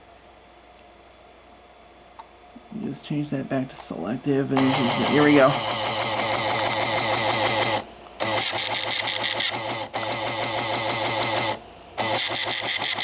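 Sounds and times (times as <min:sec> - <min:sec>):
printer rapid mechanical rattle: 0:04.6 - 0:13.0.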